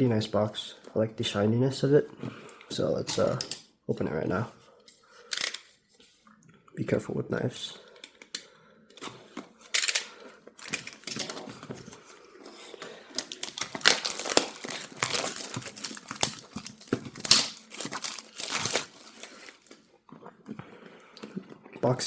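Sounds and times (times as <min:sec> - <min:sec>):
wrapping crinkling and tearing: 0:09.5 - 0:19.9
knife cutting wrapping: 0:09.7 - 0:19.8.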